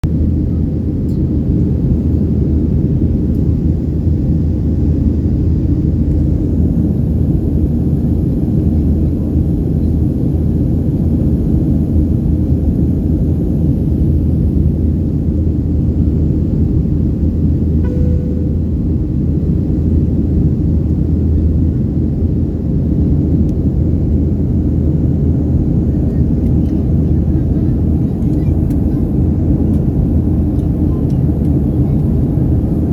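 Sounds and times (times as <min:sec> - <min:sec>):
airliner cabin engine rumble: 0:00.0 - 0:32.9
brief tone: 0:17.8 - 0:19.3.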